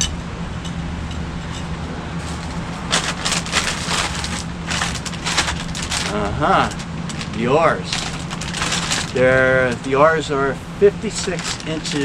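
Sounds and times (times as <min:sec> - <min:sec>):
steady low hum: 0:00.0 - 0:12.0
plastic packaging crinkling: 0:02.2 - 0:10.0, 0:11.1 - 0:12.0.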